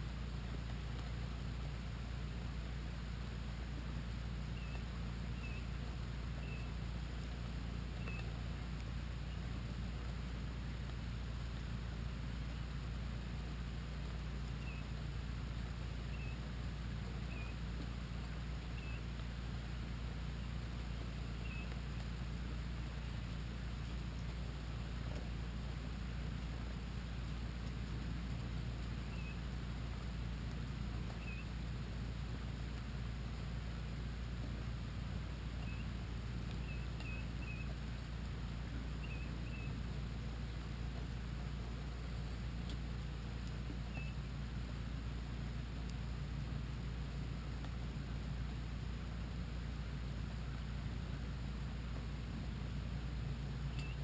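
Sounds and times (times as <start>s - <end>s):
steady rain hiss: 0.0s - 54.0s
faint high chirp: 4.5s - 6.8s, 7.9s - 8.4s, 14.5s - 15.0s, 16.0s - 16.5s, 17.2s - 17.6s, 18.6s - 19.2s, 21.3s - 22.0s, 28.8s - 29.5s, 31.1s - 31.6s, 35.6s - 37.8s, 38.9s - 39.9s, 43.9s - 44.3s, 53.7s - 54.0s
high squeaky chirps: 29.1s - 29.4s.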